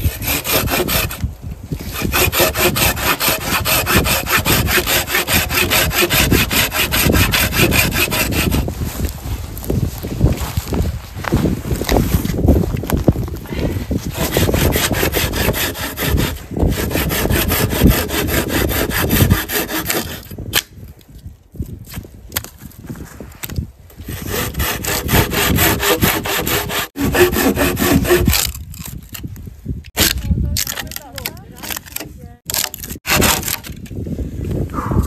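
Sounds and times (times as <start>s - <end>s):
hand saw cutting wood: 0.0s - 8.7s, 14.1s - 20.4s, 24.0s - 29.0s, 30.0s - 33.8s.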